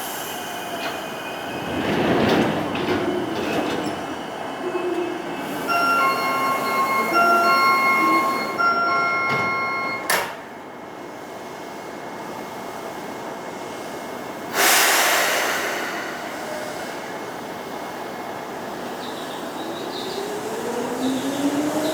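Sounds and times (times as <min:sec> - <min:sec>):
electronic door chime: 0:05.7 - 0:10.2
air hiss burst: 0:14.5 - 0:17.0.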